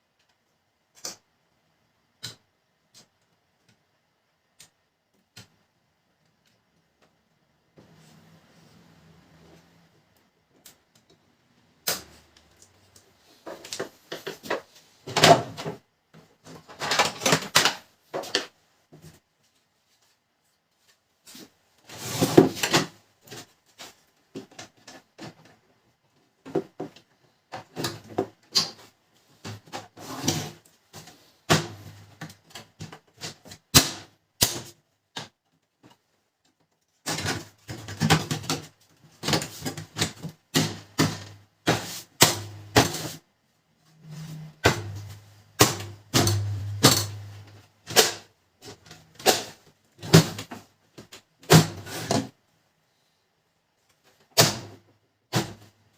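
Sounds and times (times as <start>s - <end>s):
plastic parts clicking and snapping: 0.2s - 1.2s
short low hum: 44.0s - 45.4s, 46.0s - 47.6s.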